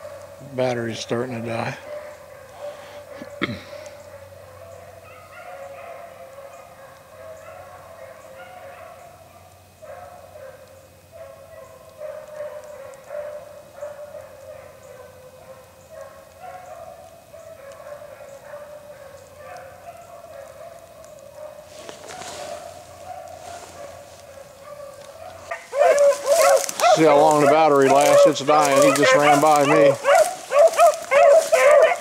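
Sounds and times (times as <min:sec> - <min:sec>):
hounds baying: 0:00.0 - 0:32.0.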